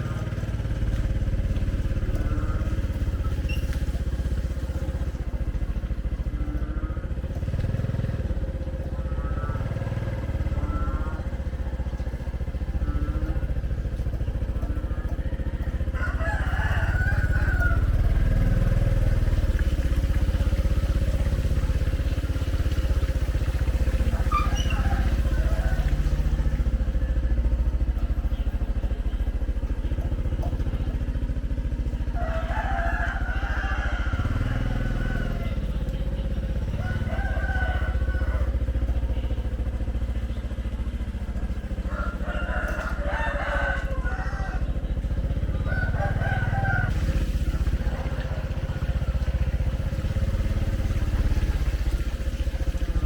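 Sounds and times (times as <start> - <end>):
vehicle engine rumble: 0.0 - 53.0
rooster crowing: 14.5 - 19.5, 23.8 - 27.2, 31.8 - 35.7, 36.6 - 39.6, 40.7 - 47.0.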